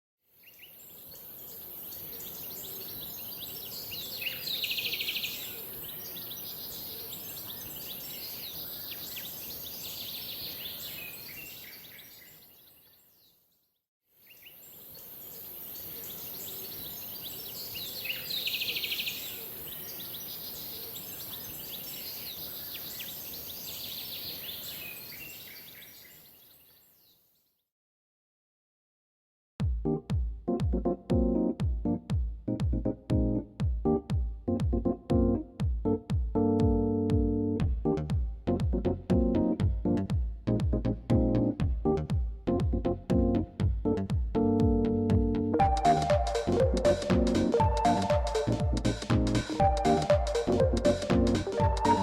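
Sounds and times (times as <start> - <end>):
birds chirping: 0.5 - 13.1, 14.3 - 26.6, 45.6 - 52.0
steady high hiss: 45.6 - 52.0.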